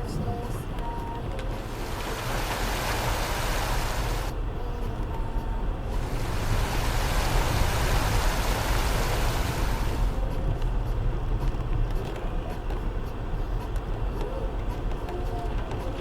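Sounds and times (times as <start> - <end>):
low rumble of car engine: 0.0 - 16.0
broad rushing hiss: 1.6 - 4.3, 5.9 - 10.2.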